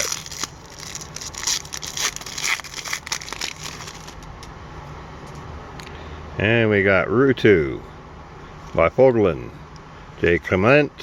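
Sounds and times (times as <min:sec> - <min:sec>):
card pack wrapper crinkling: 0:00.0 - 0:04.4.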